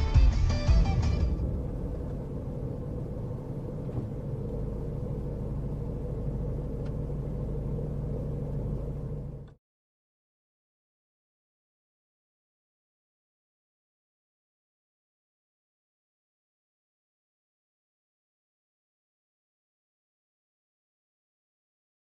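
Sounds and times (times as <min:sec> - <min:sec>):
car engine and road noise: 0:00.0 - 0:09.6.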